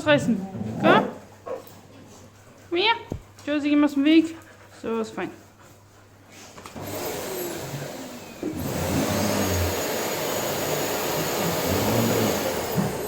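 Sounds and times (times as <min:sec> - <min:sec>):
vacuum cleaner running: 0:06.7 - 0:13.0.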